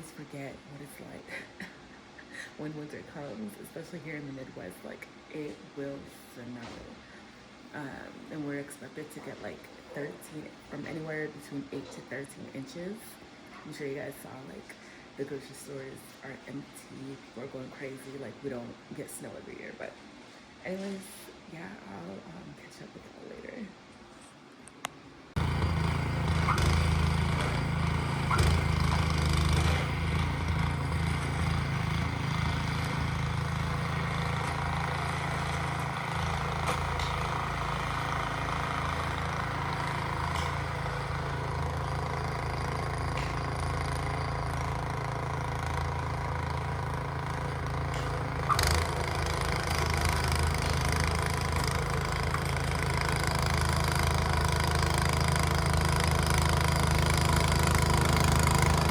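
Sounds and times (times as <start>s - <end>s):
engine running steadily: 25.4s - 58.9s.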